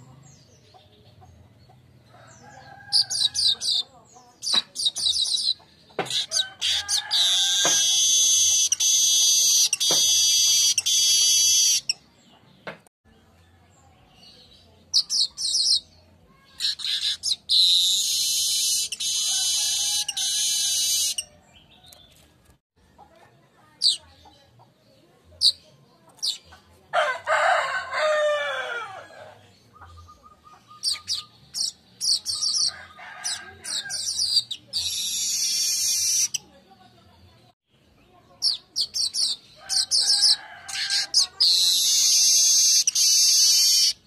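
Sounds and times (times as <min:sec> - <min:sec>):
bird buzzy chattering song: 0:00.3 - 0:12.1, 0:14.2 - 0:22.2, 0:25.4 - 0:26.7, 0:29.5 - 0:36.6, 0:37.8 - 0:44.0
rooster crowing: 0:06.3 - 0:08.0, 0:19.2 - 0:20.8, 0:27.0 - 0:29.4, 0:32.7 - 0:34.0, 0:39.6 - 0:41.2.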